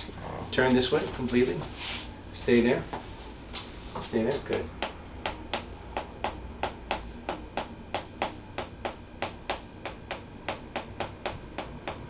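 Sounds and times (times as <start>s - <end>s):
wooden hammer tapping: 4.3s - 12.0s.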